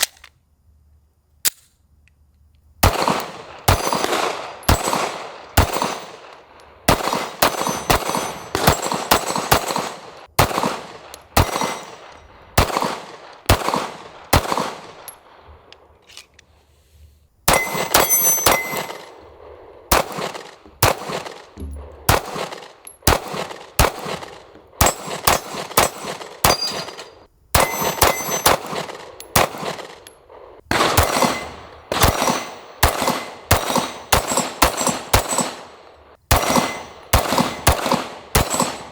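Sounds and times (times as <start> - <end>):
pistol shots: 2.8 - 15.8, 17.5 - 38.9
metallic ringing: 7.5 - 9.2, 17.5 - 19.1, 26.5 - 28.6.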